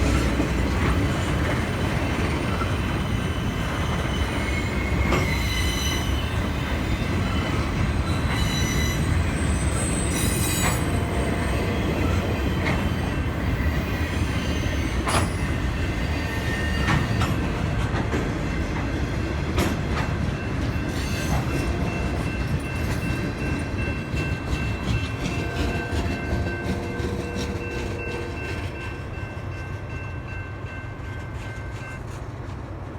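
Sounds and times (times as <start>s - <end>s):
sharp knocks from train wheels: 0.0s - 9.0s, 12.0s - 13.1s, 13.8s - 28.6s
freight train rolling past: 0.0s - 32.9s
high wheel squeal: 2.0s - 17.4s.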